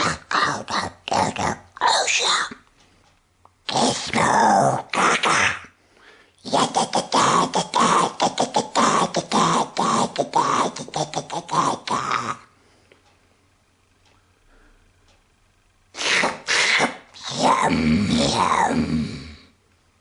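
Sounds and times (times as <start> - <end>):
man babbling creature chatter: 0.0 - 2.6, 3.6 - 5.7, 6.4 - 12.5, 15.9 - 19.4.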